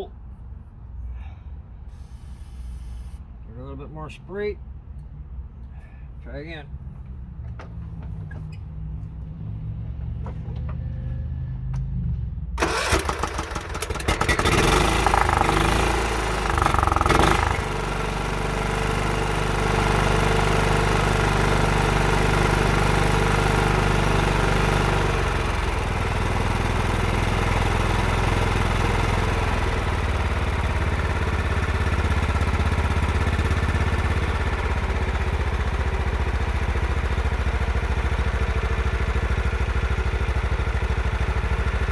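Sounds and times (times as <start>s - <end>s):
lawn tractor engine starting and running: 12.6s - 41.9s.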